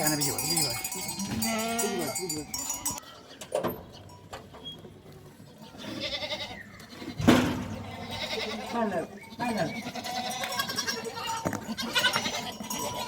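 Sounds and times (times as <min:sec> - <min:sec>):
small livestock bleating: 0:01.3 - 0:02.2, 0:05.4 - 0:13.0.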